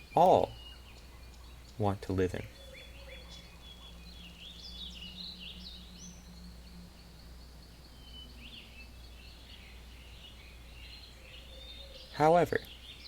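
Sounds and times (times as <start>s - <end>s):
birds chirping and twittering: 0.0s - 13.0s
faint low hum: 0.0s - 13.0s.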